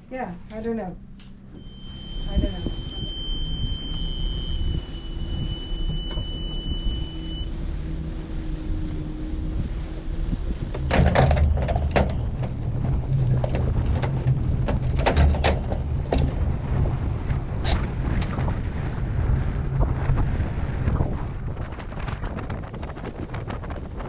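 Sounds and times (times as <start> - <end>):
steady low rumble: 0.0 - 24.0
wind buffeting microphone: 0.0 - 24.0
high beeping tone: 1.4 - 8.1
waves knocking and splashing on hull: 1.6 - 24.0.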